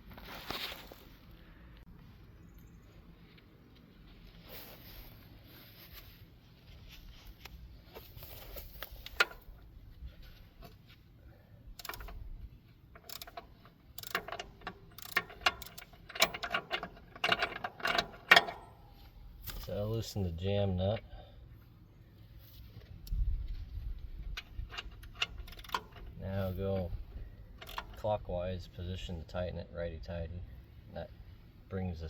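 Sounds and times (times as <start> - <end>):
metal tools clinking: 11.8 - 12.3, 12.9 - 19.8, 24.3 - 26.6.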